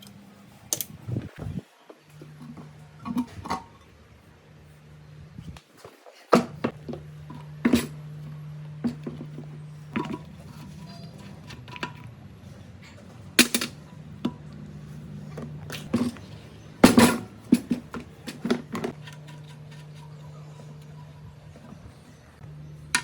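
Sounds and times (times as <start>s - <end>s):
steady low hum: 6.4s - 23.0s
metal tools clanking: 15.8s - 21.2s.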